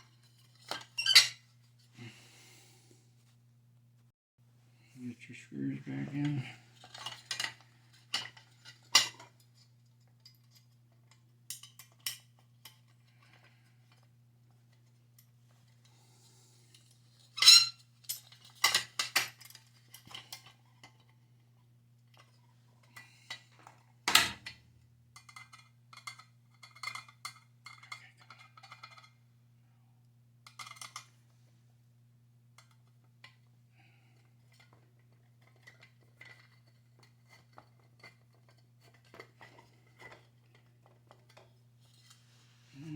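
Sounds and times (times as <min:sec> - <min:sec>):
faint low hum: 0:01.8 - 0:08.8, 0:19.4 - 0:42.9.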